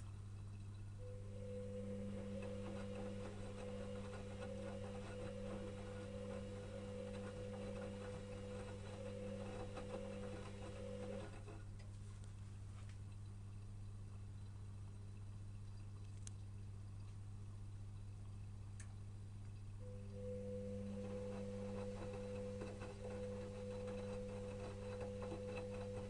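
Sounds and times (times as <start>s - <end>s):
low hum: 0.0s - 11.4s, 13.6s - 26.0s
washing machine motor whine: 0.0s - 11.8s, 19.6s - 26.0s.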